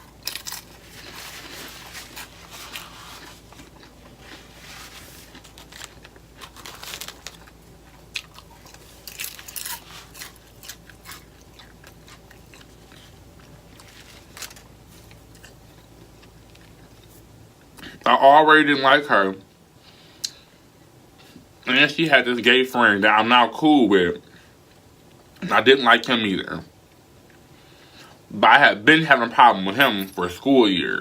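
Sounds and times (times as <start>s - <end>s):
person chewing and crunching food: 0.0s - 18.0s.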